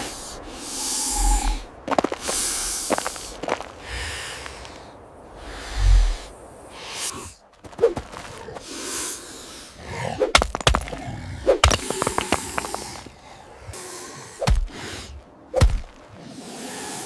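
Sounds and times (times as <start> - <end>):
sharp thuds and knocks: 14.4 - 14.7, 15.6 - 16.0.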